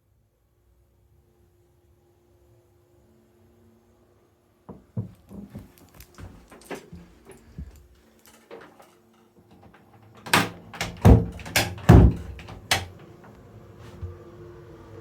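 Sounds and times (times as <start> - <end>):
sharp knocks: 10.3 - 13.0
heavy thuds: 10.6 - 13.0.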